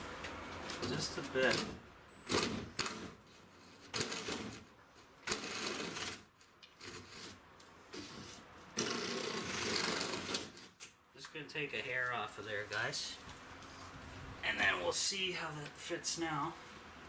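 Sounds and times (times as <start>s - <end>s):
hand tool scraping wood: 5.3s - 10.8s.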